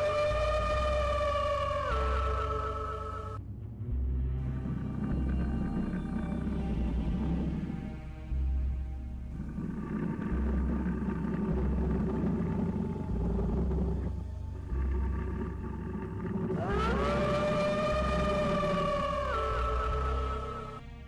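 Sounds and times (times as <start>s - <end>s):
held synth tones: 0.0s - 3.4s, 9.3s - 20.9s
pulsing low bass: 0.0s - 21.0s
rising gliding synth note: 9.6s - 20.8s.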